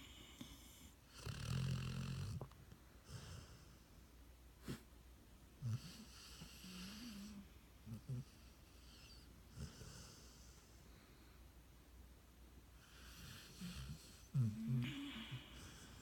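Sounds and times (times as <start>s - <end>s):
dog snoring: 0.0s - 3.8s, 5.6s - 10.7s, 12.8s - 16.0s.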